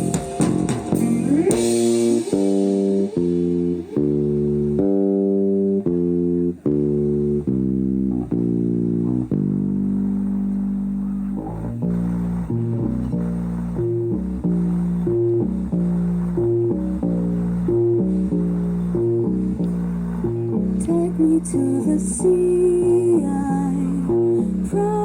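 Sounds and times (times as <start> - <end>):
rock band playing instrumental: 0.0 - 3.8
cymbal wash: 0.0 - 4.7.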